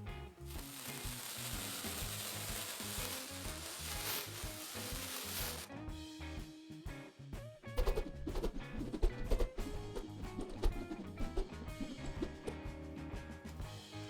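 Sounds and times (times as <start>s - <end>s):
sizzling hiss: 0.0s - 6.3s, 9.6s - 12.7s
background music with bass line: 0.0s - 14.0s.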